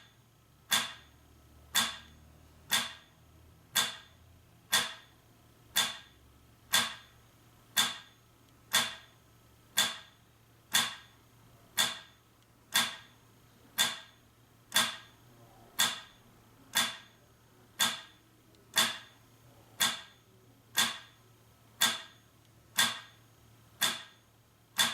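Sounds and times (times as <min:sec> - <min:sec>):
metronome ticking: 0:03.8 - 0:04.1, 0:16.8 - 0:17.1, 0:20.8 - 0:21.1, 0:21.8 - 0:22.2, 0:22.8 - 0:23.2, 0:23.8 - 0:24.2.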